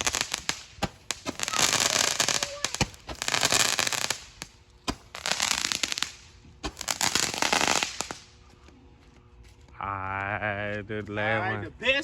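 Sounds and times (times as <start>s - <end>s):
fireworks crackling: 0.0s - 8.4s
fireworks sharp cracks: 0.0s - 8.4s.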